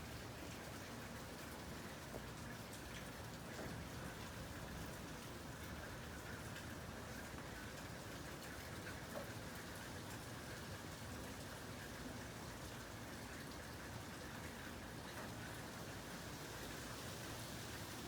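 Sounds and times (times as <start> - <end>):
rain hiss: 15.2 - 18.0.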